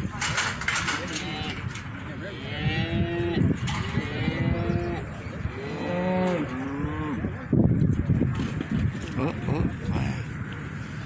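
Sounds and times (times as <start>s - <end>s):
low rumble of commotion: 0.0s - 11.0s
cattle mooing: 1.0s - 1.7s, 2.3s - 7.5s.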